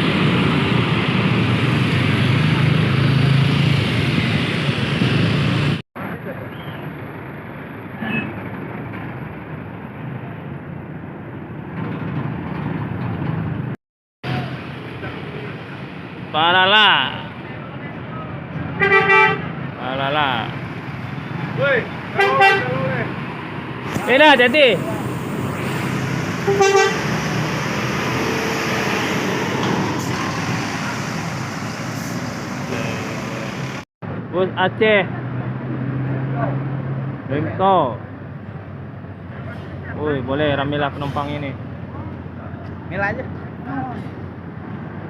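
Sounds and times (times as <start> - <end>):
diesel bus engine running: 0.0 - 33.9
traffic noise: 0.0 - 45.0
bus horn blast: 18.8 - 19.5, 22.2 - 22.8, 26.4 - 27.3.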